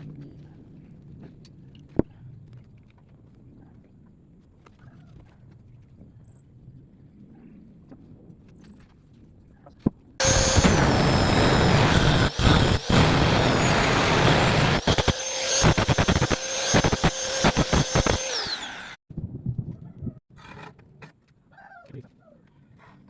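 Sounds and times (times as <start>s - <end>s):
angle grinder cutting steel pipe: 10.2s - 19.0s
rapid scraping clicks: 10.2s - 19.0s.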